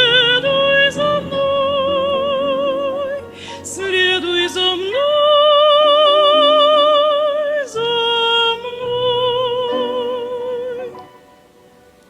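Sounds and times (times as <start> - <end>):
woman singing with vibrato: 0.0 - 11.2
piano accompaniment: 0.0 - 12.0.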